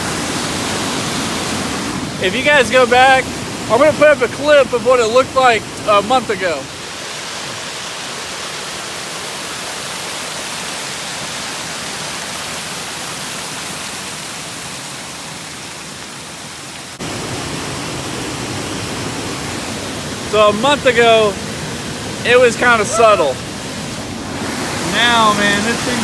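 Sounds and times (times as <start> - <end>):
creek water rushing: 0.0 - 26.0.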